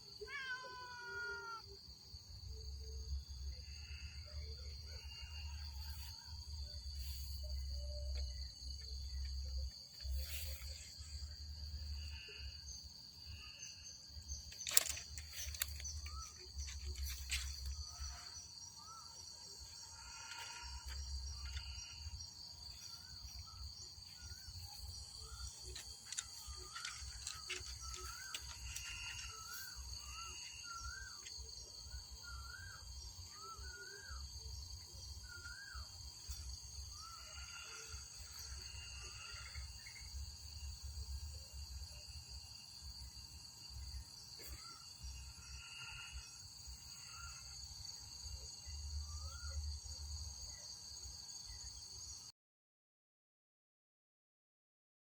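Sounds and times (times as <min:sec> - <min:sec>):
insects droning: 0:00.0 - 0:52.3.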